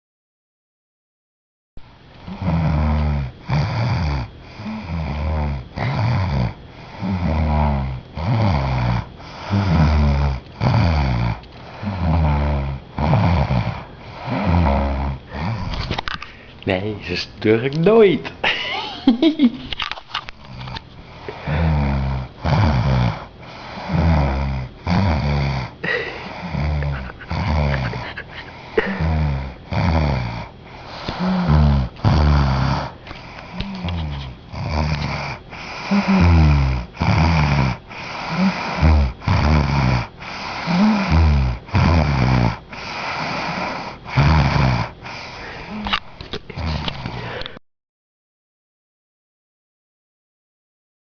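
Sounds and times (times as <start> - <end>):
woman snoring: 2.2 - 15.9, 20.5 - 47.6.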